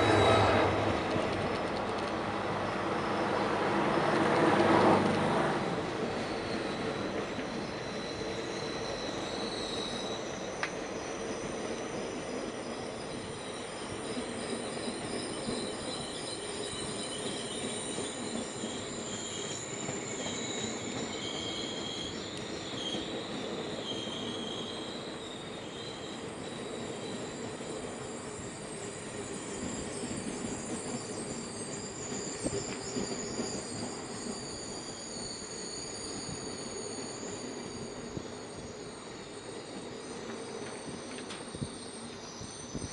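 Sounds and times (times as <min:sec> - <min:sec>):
train wheels rumbling: 0:00.0 - 0:42.9
train wheels squealing: 0:00.0 - 0:42.9.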